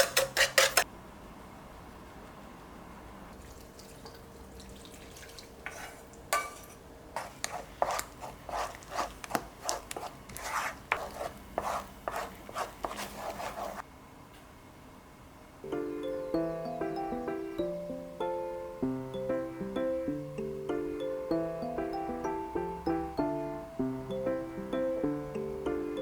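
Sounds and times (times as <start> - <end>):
utensil knocks and scrapes: 0.0 - 0.9, 5.7 - 13.8.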